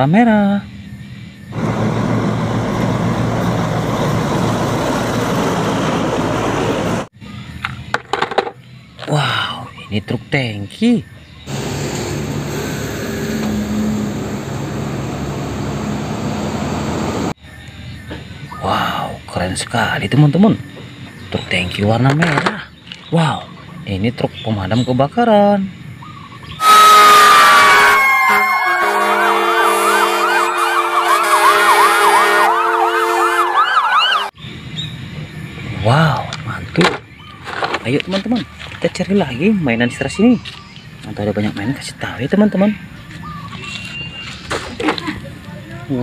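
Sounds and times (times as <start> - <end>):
vehicle engine running: 1.5 - 7.6, 11.5 - 17.4
toy siren warbling wail: 26.6 - 34.4.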